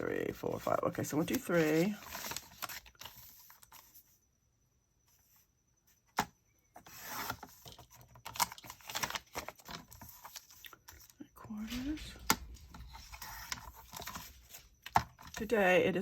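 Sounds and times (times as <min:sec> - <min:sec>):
paper rustling: 0:00.3 - 0:04.1, 0:06.9 - 0:15.5.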